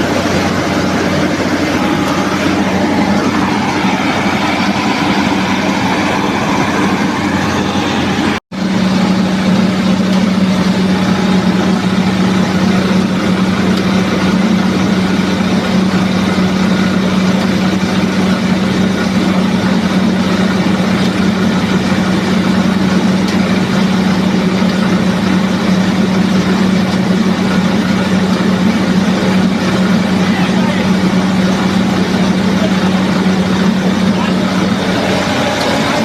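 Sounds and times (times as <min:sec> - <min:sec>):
milling machine running: 0:00.0 - 0:36.0.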